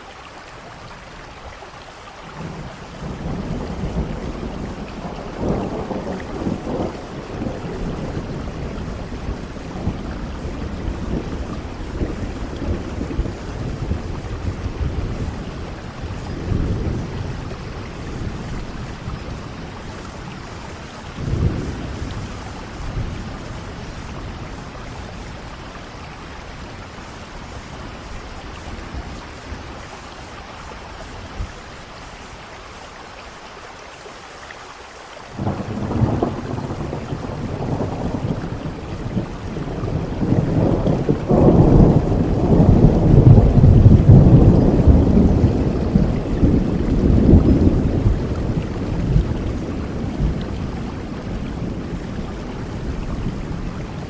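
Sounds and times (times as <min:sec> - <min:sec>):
steady rain falling: 0:00.0 - 0:54.0
thunder rumbling: 0:02.4 - 0:30.4, 0:35.3 - 0:54.0.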